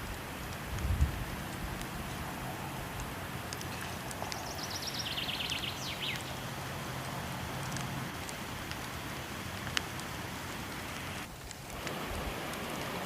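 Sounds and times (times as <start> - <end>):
wood fire crackling: 0.0 - 13.0
songbird singing: 3.8 - 6.6
waterfall rushing: 11.8 - 13.0.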